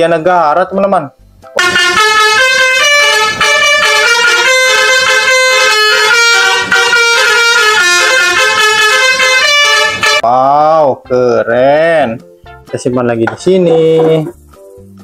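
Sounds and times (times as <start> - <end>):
multi-tone bus horn tune: 1.6 - 10.3.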